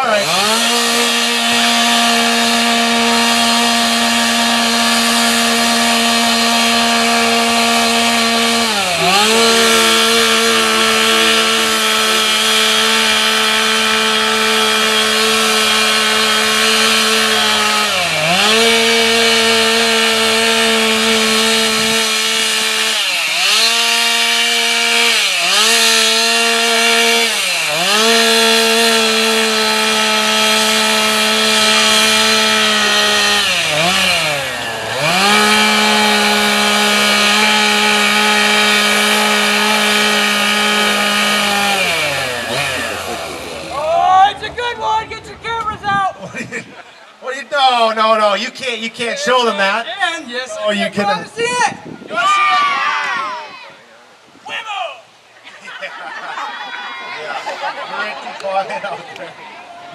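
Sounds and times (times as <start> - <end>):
chainsaw cutting wood: 0.0 - 46.9.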